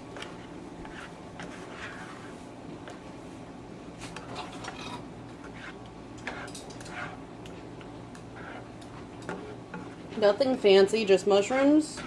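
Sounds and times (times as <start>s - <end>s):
steady low hum: 0.0s - 12.0s
utensil scraping frying pan: 0.1s - 2.5s, 4.0s - 10.6s.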